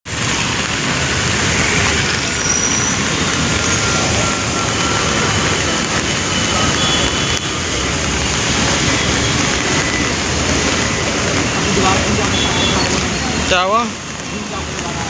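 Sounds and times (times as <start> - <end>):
heavy rain: 0.0 - 15.0
traffic on wet street: 0.0 - 15.0.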